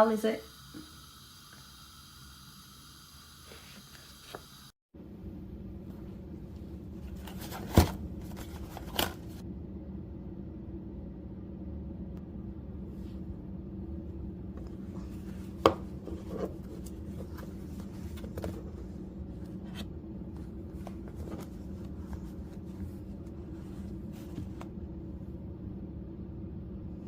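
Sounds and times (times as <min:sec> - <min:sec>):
steady low hum: 0:00.0 - 0:07.2.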